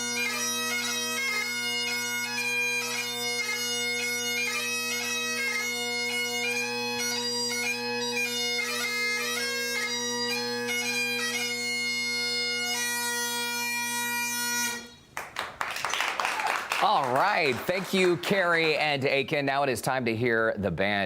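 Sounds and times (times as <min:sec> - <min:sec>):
bagpipe drones and chanter tune: 0:00.0 - 0:15.1.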